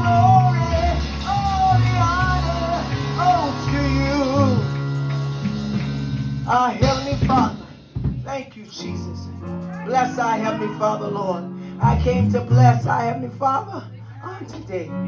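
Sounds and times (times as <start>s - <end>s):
sustained bass line: 0.0s - 8.0s, 11.8s - 13.5s.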